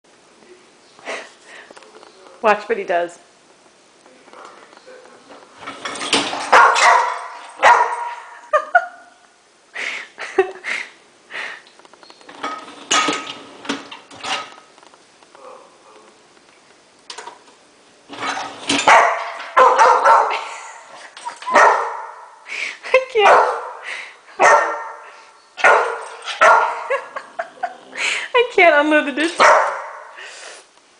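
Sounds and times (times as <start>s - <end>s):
dog barking loudly: 6.5s - 8.3s, 18.8s - 20.5s, 21.5s - 22.4s, 23.2s - 23.8s, 24.4s - 27.0s, 29.4s - 30.2s.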